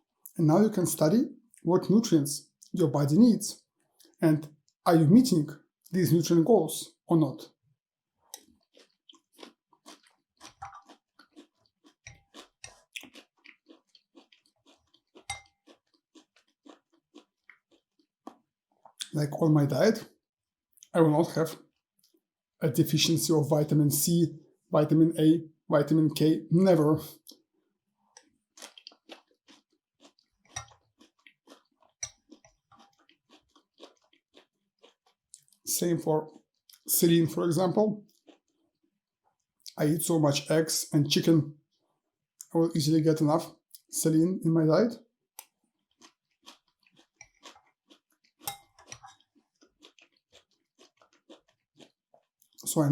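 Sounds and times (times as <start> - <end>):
man chewing food: 3.6 - 4.8, 8.2 - 19.1, 27.2 - 35.7, 36.3 - 36.9, 38.0 - 39.8, 41.6 - 42.5, 45.3 - 52.7.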